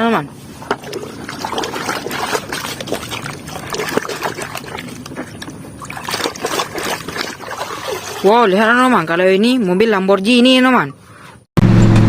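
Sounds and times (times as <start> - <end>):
water splashing in a basin: 0.6 - 8.8.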